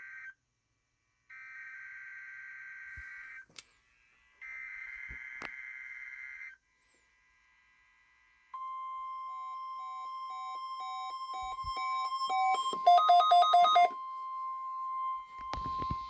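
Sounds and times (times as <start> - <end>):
electronic beeps: 8.6 - 16.0
steady high alert tone: 9.9 - 15.3.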